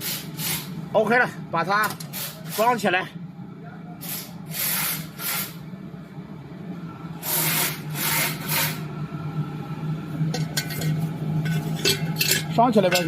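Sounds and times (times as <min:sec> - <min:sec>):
low hum: 0:08.9 - 0:13.0.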